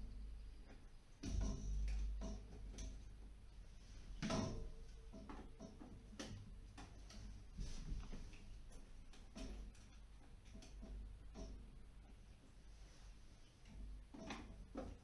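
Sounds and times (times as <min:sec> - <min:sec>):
clicks and taps on wiring: 0:00.6 - 0:03.4, 0:04.2 - 0:12.2.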